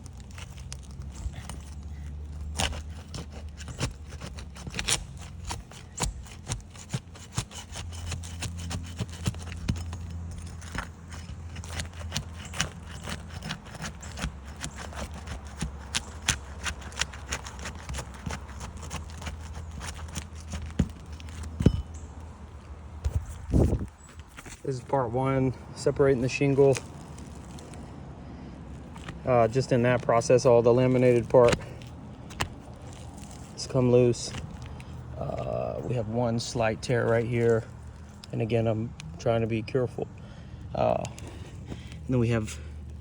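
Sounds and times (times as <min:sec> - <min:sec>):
tool prying roof shingles: 0:00.0 - 0:22.3, 0:28.7 - 0:35.8
low steady hum: 0:00.0 - 0:43.0.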